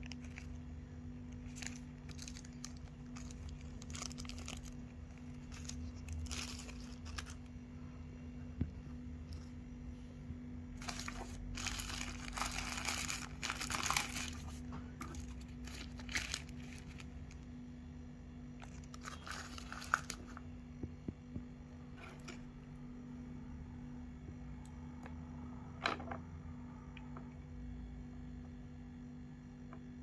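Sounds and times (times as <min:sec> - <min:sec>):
packaging crinkling: 0:00.0 - 0:07.6, 0:10.8 - 0:17.5, 0:18.6 - 0:20.4
low steady hum: 0:00.0 - 0:30.0.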